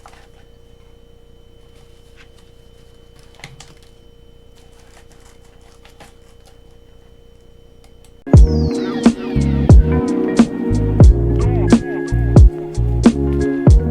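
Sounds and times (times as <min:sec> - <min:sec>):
clicks and handling noise: 0:00.0 - 0:08.3
electrical hum: 0:00.0 - 0:13.9
loud music: 0:08.3 - 0:13.9.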